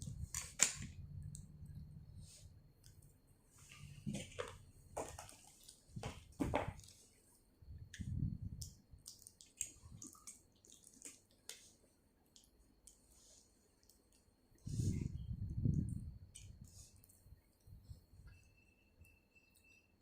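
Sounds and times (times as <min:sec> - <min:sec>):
wet chewing sounds: 0:08.5 - 0:13.0.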